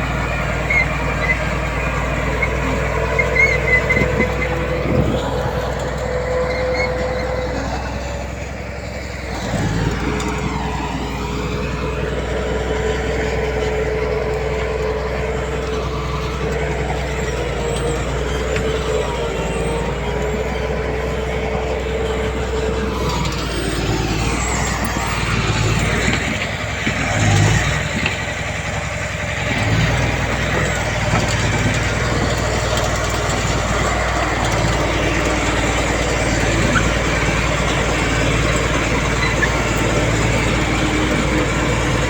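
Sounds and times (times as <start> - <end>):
heavy diesel machinery running: 0.0 - 42.0.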